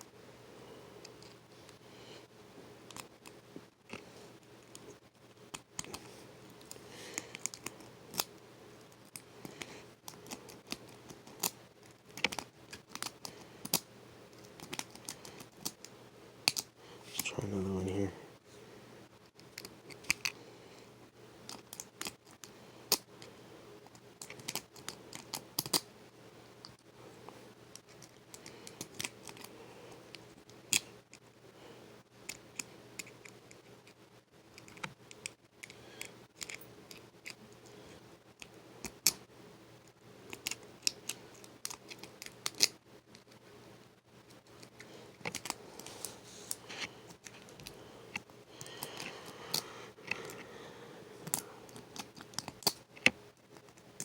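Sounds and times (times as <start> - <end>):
lock pick clicking and scraping: 36.4 - 37.4, 51.2 - 53.2.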